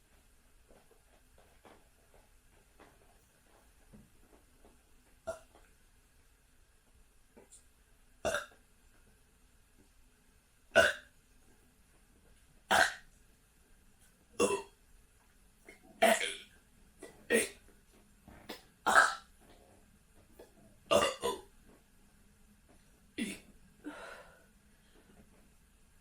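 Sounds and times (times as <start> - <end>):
person burping: 5.3 - 5.5, 8.2 - 8.6, 10.8 - 11.1, 12.7 - 13.0, 14.4 - 14.7, 16.0 - 16.4, 17.0 - 17.6, 18.9 - 19.3, 20.9 - 21.5, 23.2 - 23.5.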